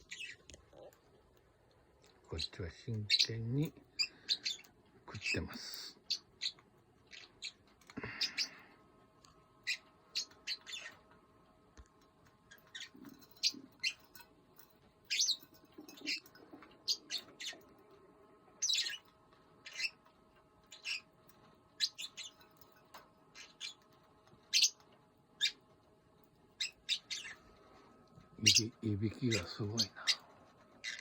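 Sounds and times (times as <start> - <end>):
bird chirping and clicking: 0.0 - 2.2, 2.8 - 8.6, 9.2 - 27.6, 28.3 - 31.0.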